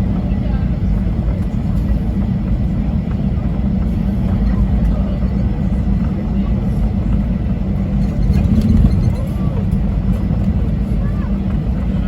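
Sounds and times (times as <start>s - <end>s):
airplane cabin engine rumble: 0.0s - 12.0s.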